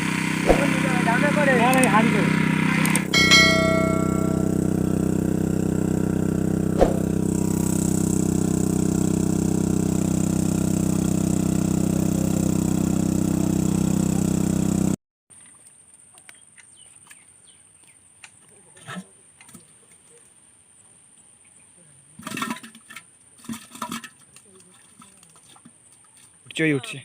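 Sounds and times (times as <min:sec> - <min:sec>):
engine-driven water pump: 0:00.0 - 0:15.7, 0:22.1 - 0:26.8.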